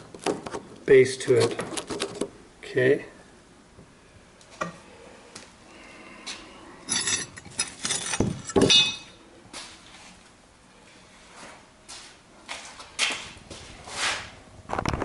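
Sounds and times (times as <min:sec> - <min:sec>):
metal hardware clinking: 0:06.9 - 0:09.2.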